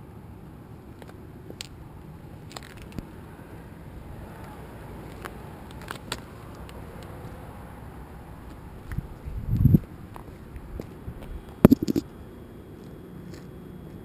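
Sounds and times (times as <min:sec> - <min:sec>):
sharp clicks and ticks: 0:11.6 - 0:12.1.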